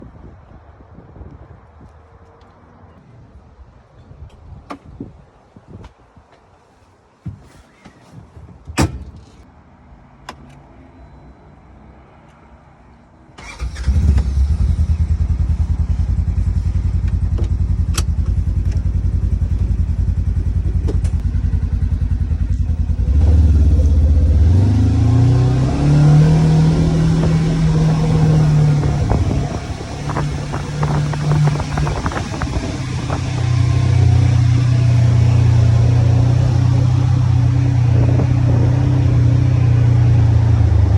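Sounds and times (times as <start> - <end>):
engine starting and revving: 13.4 - 15.8, 22.8 - 40.9
ignition clicks: 17.0 - 18.9.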